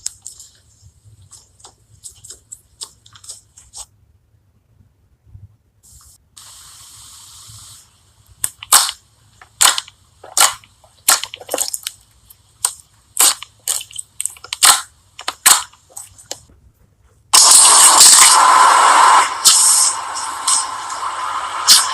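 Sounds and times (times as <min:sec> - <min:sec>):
steady hiss: 0:05.8 - 0:16.5, 0:17.3 - 0:21.9
slime squishing and popping: 0:08.4 - 0:12.0, 0:12.6 - 0:16.4.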